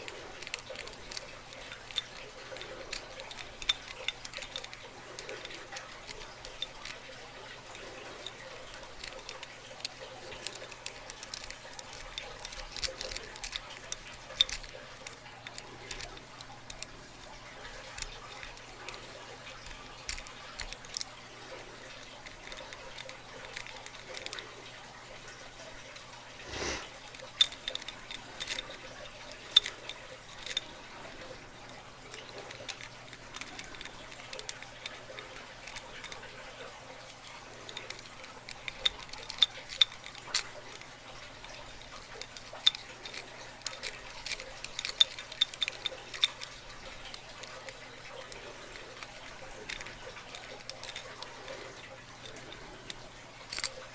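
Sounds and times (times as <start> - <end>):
lock pick clicks and scrapes: 0.0 - 53.9.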